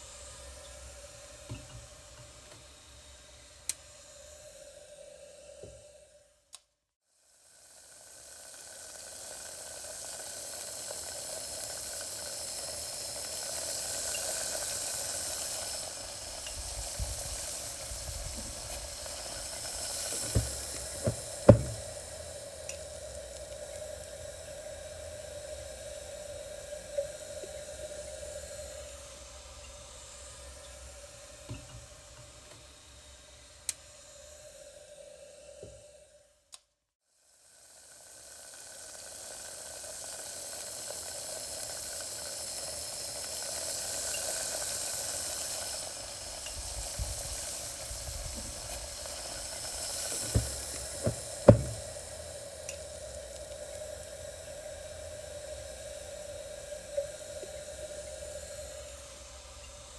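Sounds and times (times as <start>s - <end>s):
water boiling: 7.4s - 33.6s, 37.4s - 59.9s
sharp pops: 50.1s - 52.0s.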